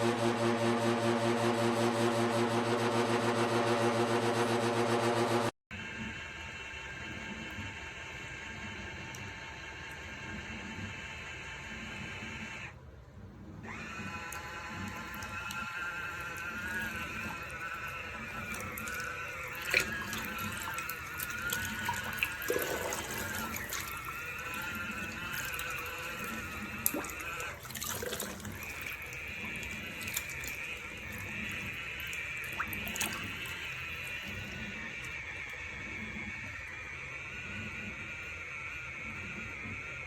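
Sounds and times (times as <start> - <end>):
washer wavering whine: 0.0 - 40.0
water sloshing: 14.8 - 35.1.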